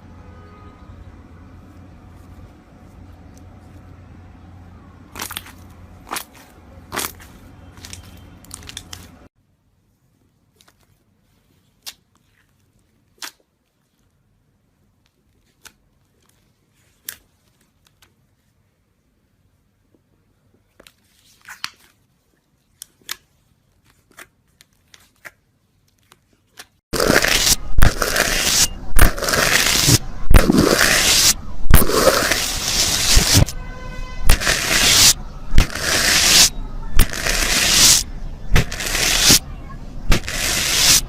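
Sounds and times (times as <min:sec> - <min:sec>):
faint clicks and squishes: 0:10.1 - 0:18.6, 0:19.8 - 0:26.8
loud crunching and crackling: 0:26.9 - 0:33.6, 0:34.2 - 0:41.0.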